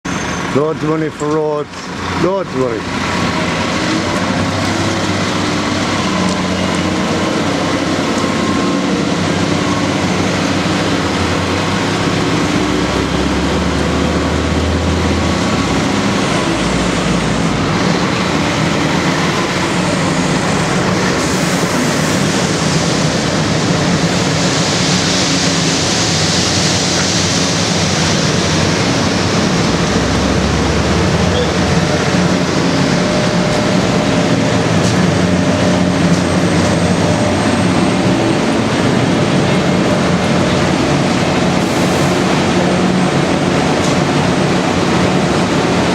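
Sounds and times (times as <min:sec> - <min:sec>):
diesel engine drone: 0:00.0 - 0:45.9
machinery hiss: 0:16.2 - 0:34.8, 0:41.3 - 0:42.8.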